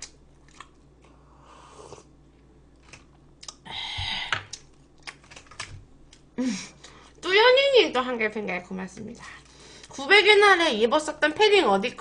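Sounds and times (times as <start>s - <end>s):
chewing: 0.4s - 1.2s.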